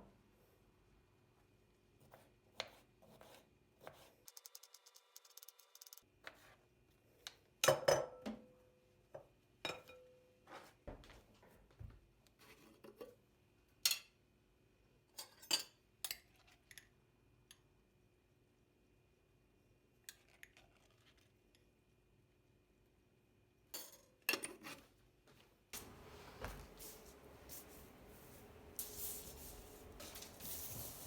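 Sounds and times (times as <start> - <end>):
dishes and utensils clinking: 25.8 - 31.0.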